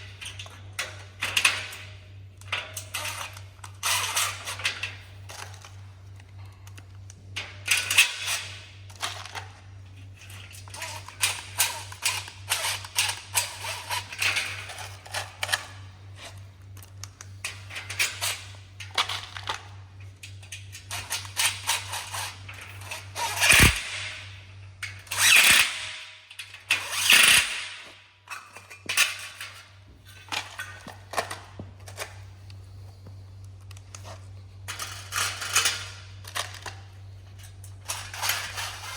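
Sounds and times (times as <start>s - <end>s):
steady low hum: 0.0s - 38.9s
frame parts clicking and rattling: 10.2s - 24.1s.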